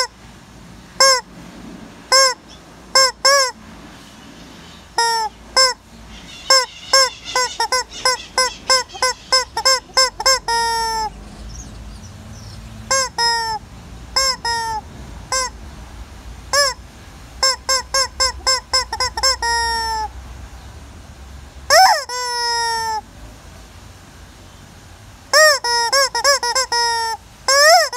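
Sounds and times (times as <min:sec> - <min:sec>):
hen cackling: 0:01.0 - 0:01.3, 0:02.1 - 0:03.6, 0:04.6 - 0:15.8, 0:16.4 - 0:20.6, 0:21.6 - 0:23.1, 0:25.3 - 0:27.9.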